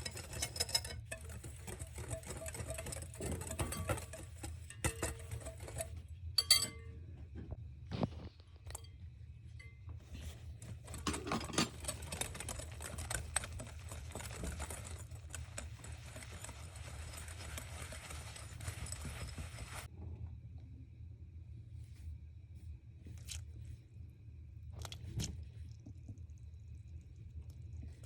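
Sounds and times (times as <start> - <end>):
spoon stirring in a mug: 0.0 - 6.8, 10.1 - 19.9
low steady hum: 0.0 - 28.0.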